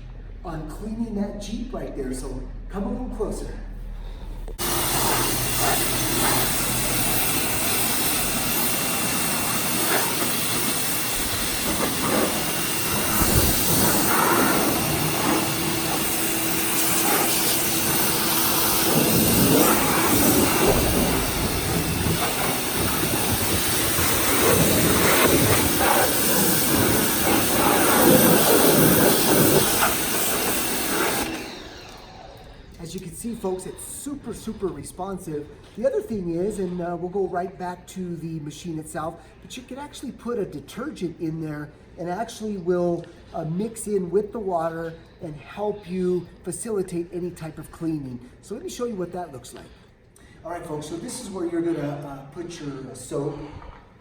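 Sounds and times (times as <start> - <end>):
pressure washer spraying water: 4.6 - 32.3.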